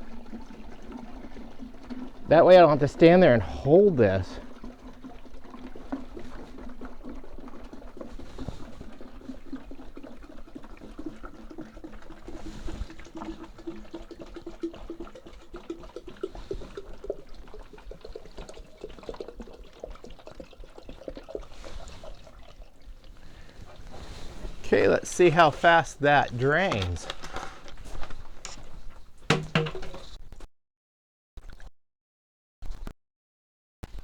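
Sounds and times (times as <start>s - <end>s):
fluid trickling and gurgling: 0.0s - 30.2s.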